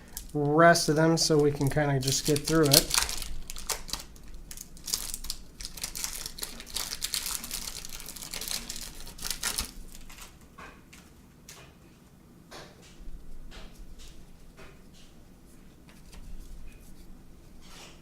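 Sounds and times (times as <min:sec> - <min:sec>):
card wrappers crinkling: 0:00.0 - 0:10.4.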